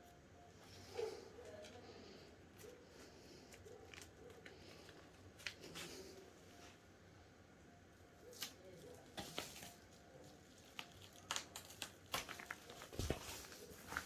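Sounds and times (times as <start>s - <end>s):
packaging clicks and rustles: 8.8s - 14.0s.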